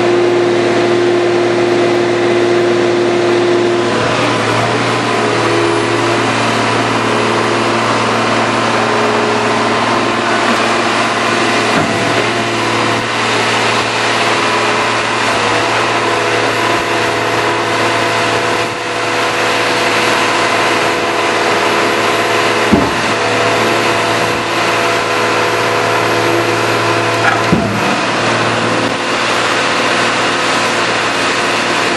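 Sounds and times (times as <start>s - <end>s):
whining tones: 0.0s - 31.7s
diesel engine droning: 0.0s - 31.9s
sharp clunks: 22.7s - 23.2s, 27.2s - 28.0s.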